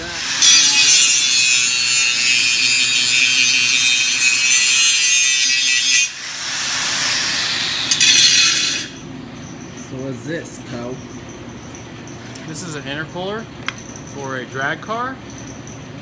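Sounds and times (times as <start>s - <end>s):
power grinder on metal: 0.0s - 9.0s.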